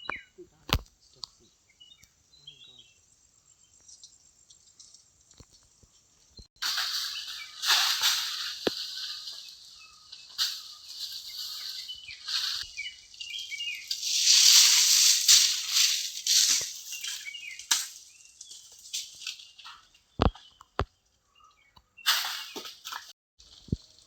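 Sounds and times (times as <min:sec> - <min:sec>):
bird chirps: 0:00.0 - 0:04.9, 0:05.7 - 0:14.0, 0:16.8 - 0:18.8, 0:19.6 - 0:22.7.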